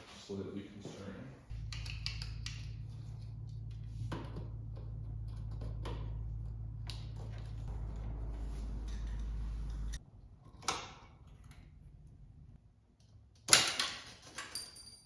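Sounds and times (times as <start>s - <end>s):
steady low hum: 1.4s - 12.6s
hand tools clicking and tapping: 1.6s - 2.8s.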